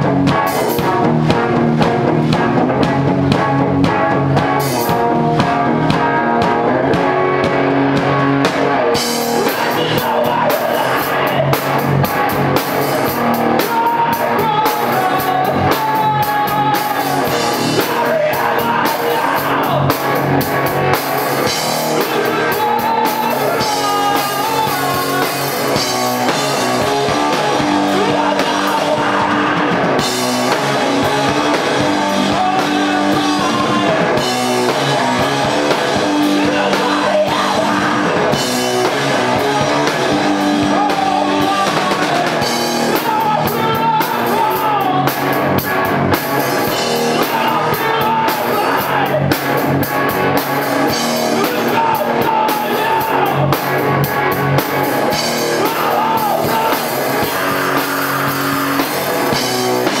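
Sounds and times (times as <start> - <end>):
drum kit: 0.0 - 60.0
electric guitar: 0.0 - 60.0
person singing: 8.9 - 12.2, 12.8 - 20.5, 21.8 - 45.4, 46.4 - 49.6, 50.9 - 53.8, 55.0 - 60.0.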